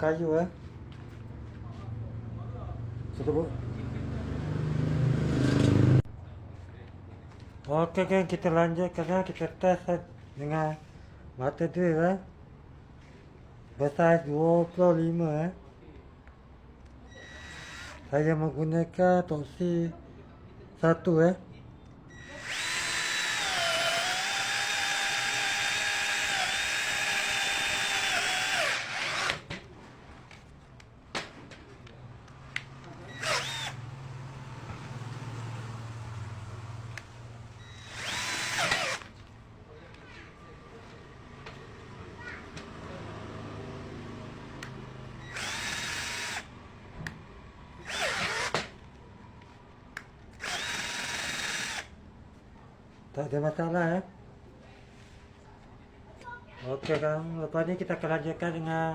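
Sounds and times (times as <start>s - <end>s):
cordless drill boring into wood: 17.2s - 18.1s, 22.2s - 29.5s, 33.1s - 33.8s, 37.6s - 39.2s, 45.2s - 46.5s, 47.8s - 48.7s, 50.4s - 51.9s.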